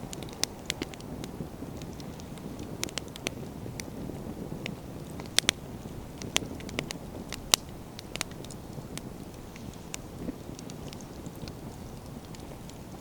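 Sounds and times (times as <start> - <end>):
firewood popping and snapping: 0.0 - 13.0
low fire rumble: 0.0 - 13.0.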